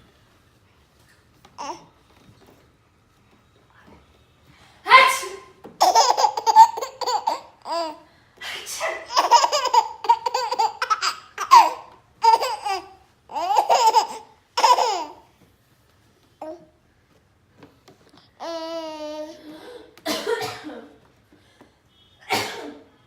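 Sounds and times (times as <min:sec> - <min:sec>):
baby laughing: 0:05.8 - 0:08.0, 0:08.8 - 0:15.3.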